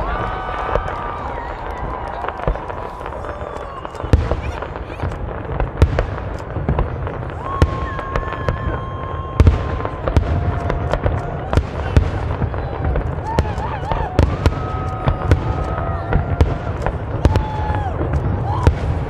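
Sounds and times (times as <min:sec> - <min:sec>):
fireworks bangs and cracks: 0:00.0 - 0:19.0
fireworks whistling: 0:00.0 - 0:19.0.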